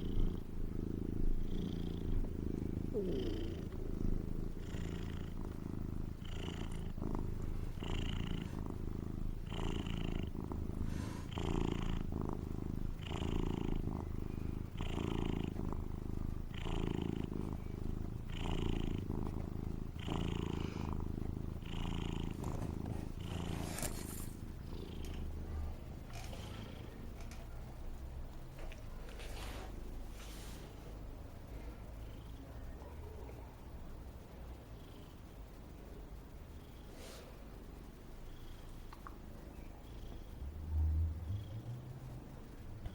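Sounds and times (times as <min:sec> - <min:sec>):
cat snoring: 0:00.0 - 0:25.6.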